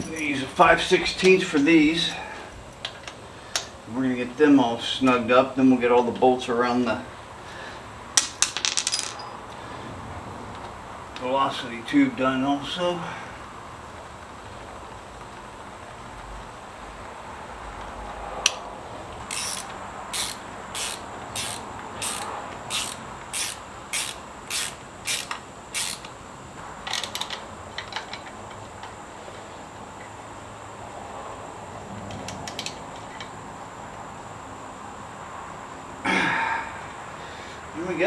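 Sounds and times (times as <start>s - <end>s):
ratchet wrench clicking: 19.3s - 26.2s.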